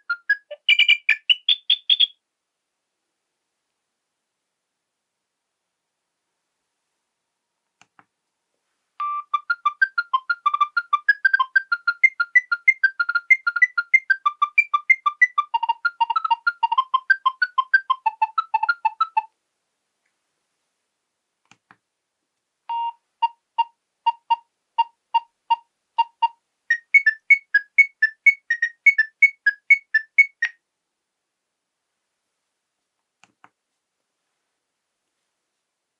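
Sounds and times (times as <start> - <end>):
polyphonic ringtone melody: 0.0 - 2.1, 9.0 - 19.3, 23.2 - 30.5.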